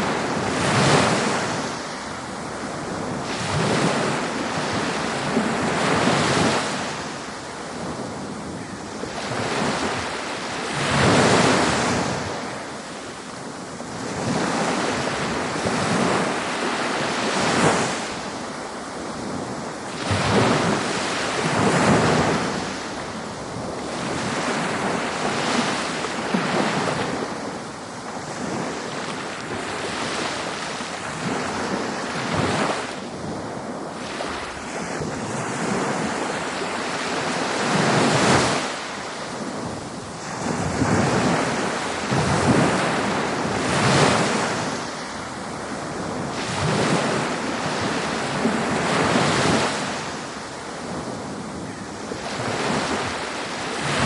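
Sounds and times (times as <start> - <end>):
ocean waves washing onto beach: 0.0 - 54.0.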